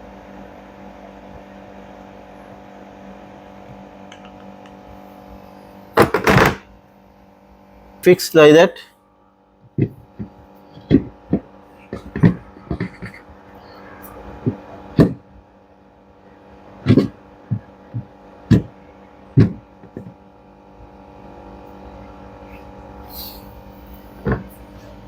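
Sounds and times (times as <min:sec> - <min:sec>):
steady hum: 0:00.0 - 0:25.0
tools knocking and tapping: 0:04.1 - 0:04.5.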